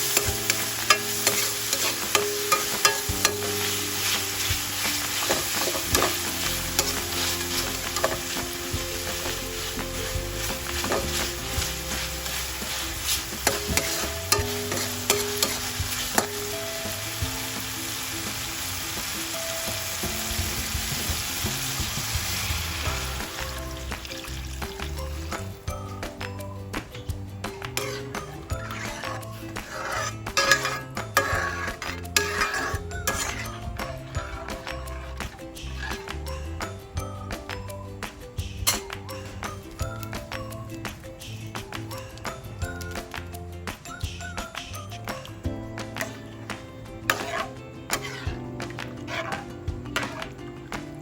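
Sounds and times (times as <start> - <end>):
utensil clicking against pan: 0.0 - 16.5, 27.7 - 36.1, 47.1 - 50.4
food sizzling in hot oil: 0.0 - 37.3, 44.9 - 50.5
soft background music: 0.0 - 51.0.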